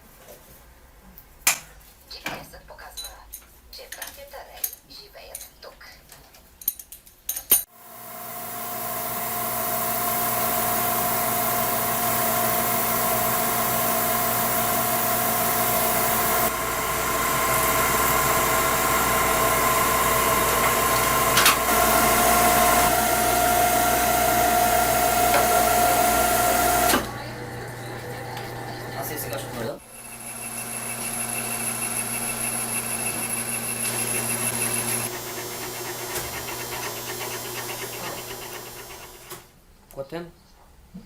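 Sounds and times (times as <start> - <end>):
lathe machine whine: 7.8 - 39.3.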